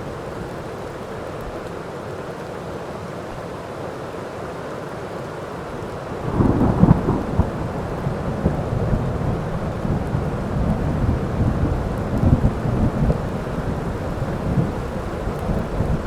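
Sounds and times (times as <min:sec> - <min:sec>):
heavy rain: 0:00.0 - 0:16.0
thunder crackling and rumbling: 0:06.2 - 0:16.0.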